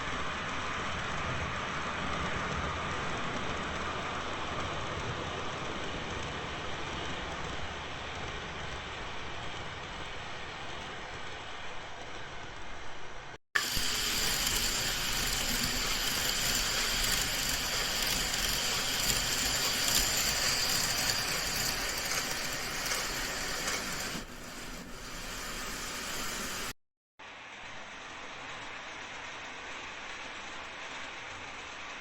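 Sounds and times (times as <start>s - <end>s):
train rolling rattle: 0.1s - 26.7s
model train motor whining: 13.6s - 26.8s.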